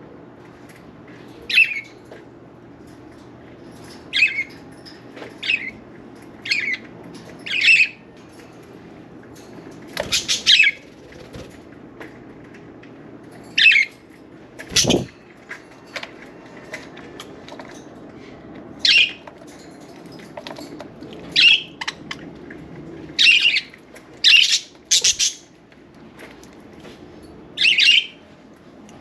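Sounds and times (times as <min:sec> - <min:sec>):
budgerigars chirping: 0:10.0 - 0:10.8, 0:14.7 - 0:15.1, 0:23.2 - 0:25.4, 0:27.6 - 0:28.2.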